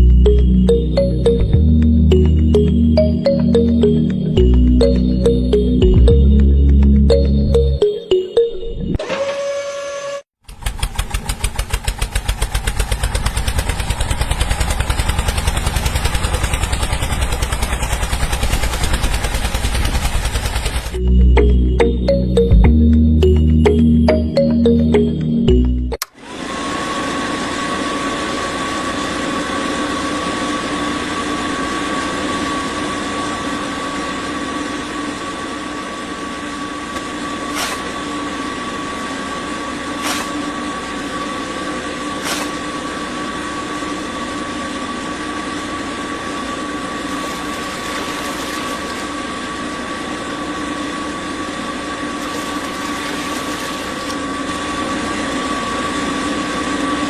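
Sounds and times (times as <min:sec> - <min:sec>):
small electric motor whining: 0:52.2 - 0:54.4.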